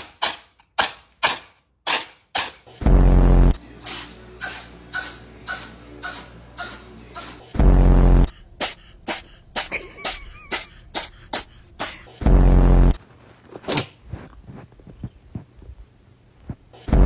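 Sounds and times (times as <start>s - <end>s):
cat sneezing: 3.8s - 7.4s, 8.6s - 12.1s.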